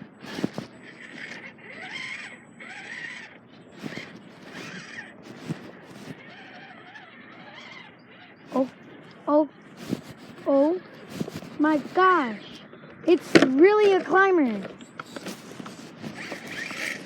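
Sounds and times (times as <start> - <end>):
electric motor whirring: 0.0 - 9.2, 13.1 - 17.0.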